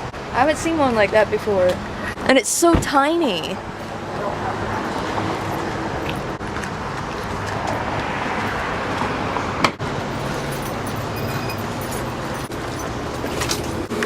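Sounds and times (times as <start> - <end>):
road traffic rumble: 0.0 - 14.0.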